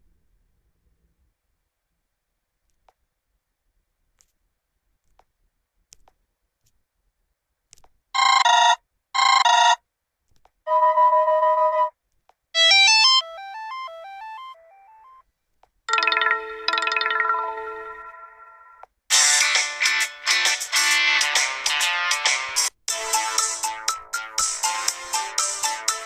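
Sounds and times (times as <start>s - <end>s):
phone chime notes: 12.6s - 15.2s, 15.9s - 18.8s.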